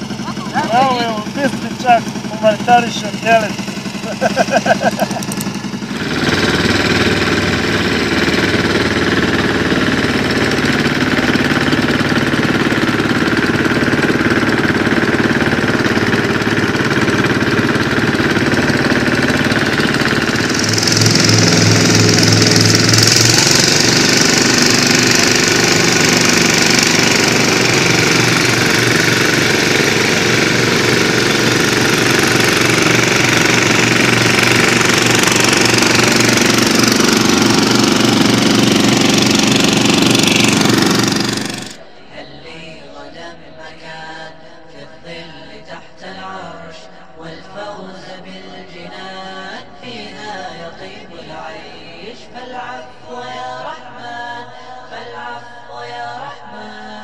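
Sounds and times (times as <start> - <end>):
engine running roughly: 0.0 - 41.8.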